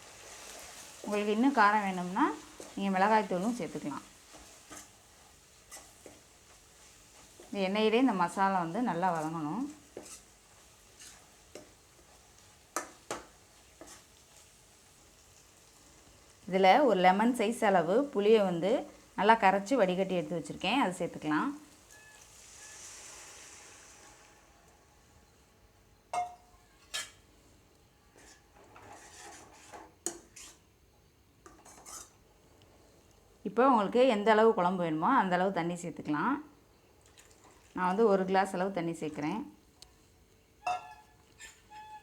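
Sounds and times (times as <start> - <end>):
spatula scraping a pan: 0.0 - 14.5, 21.9 - 24.5, 26.2 - 27.3, 28.1 - 30.7, 31.4 - 32.2, 40.6 - 42.0
faint sizzle: 0.0 - 42.0
metal utensils clinking on pan: 26.1 - 27.2, 40.6 - 42.0
soft scraping: 28.1 - 30.6.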